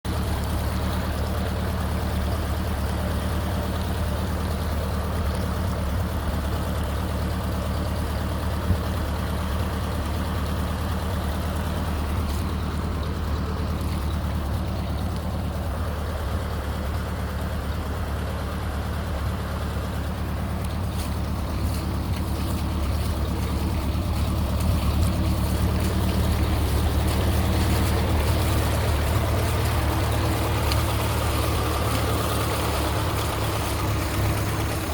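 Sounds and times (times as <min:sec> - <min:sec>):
car engine running: 0:00.0 - 0:34.9.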